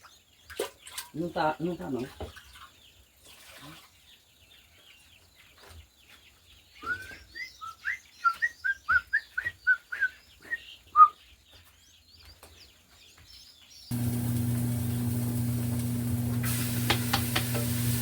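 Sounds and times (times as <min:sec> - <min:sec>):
faint bird chirps: 0:06.7 - 0:11.6.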